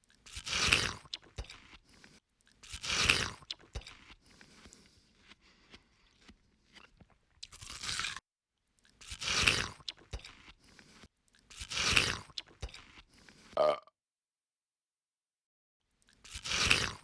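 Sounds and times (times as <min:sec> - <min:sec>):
ape crunching food: 0:00.1 - 0:08.2, 0:08.8 - 0:13.6, 0:16.0 - 0:17.0
chewing clicks: 0:08.8 - 0:13.6, 0:16.0 - 0:17.0.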